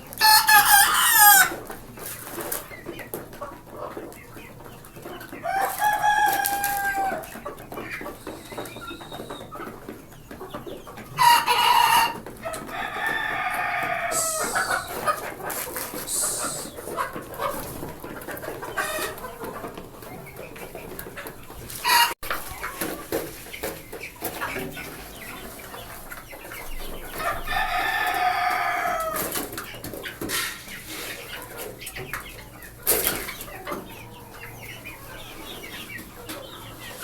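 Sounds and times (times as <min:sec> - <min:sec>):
chickens clucking: 0:00.0 - 0:37.0
roosters crowing: 0:00.1 - 0:01.6, 0:05.4 - 0:07.4, 0:11.1 - 0:17.0, 0:21.8 - 0:22.6, 0:27.2 - 0:29.5.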